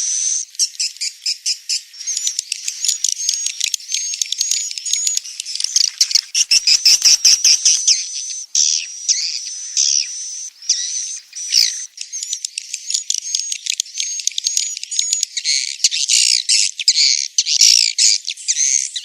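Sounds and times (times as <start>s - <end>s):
swiftlets chirping: 0.0s - 8.8s.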